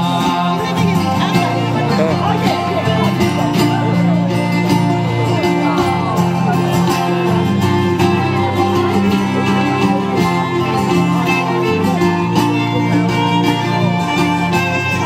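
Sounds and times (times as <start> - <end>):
folk band instrumental: 0.0 - 15.0.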